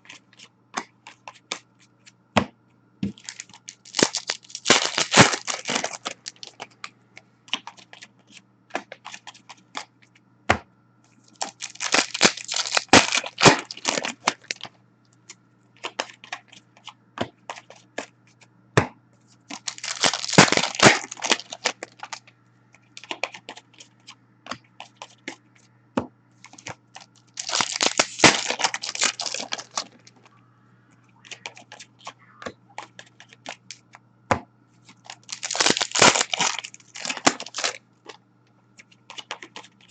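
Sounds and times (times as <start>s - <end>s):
cards clicking and rustling: 3.1s - 6.9s, 11.3s - 14.7s, 19.5s - 22.2s, 23.0s - 25.4s, 26.4s - 30.3s, 31.2s - 33.8s, 34.9s - 38.2s, 38.8s - 39.9s
wrappers crinkling and tearing: 3.2s - 6.8s, 11.3s - 14.6s, 19.5s - 22.2s, 26.4s - 30.3s, 34.9s - 37.8s.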